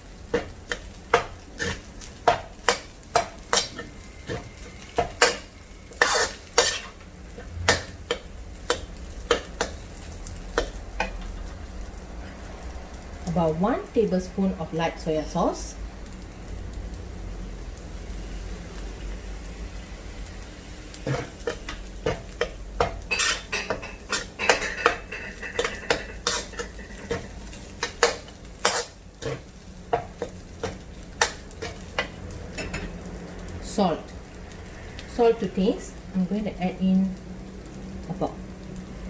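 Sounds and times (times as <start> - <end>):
light sizzle: 0.0 - 39.0
utensil scraping a pan: 1.6 - 9.8, 21.0 - 32.1.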